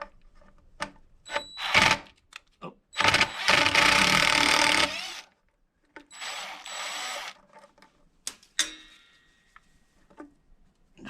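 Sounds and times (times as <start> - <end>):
cordless power driver running: 6.2 - 7.4.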